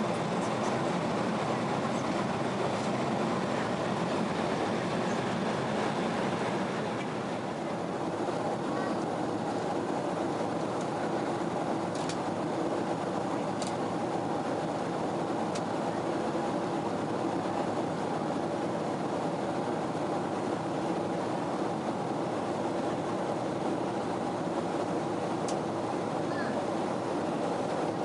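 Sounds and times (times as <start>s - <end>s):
airliner cabin drone: 0.0s - 28.0s.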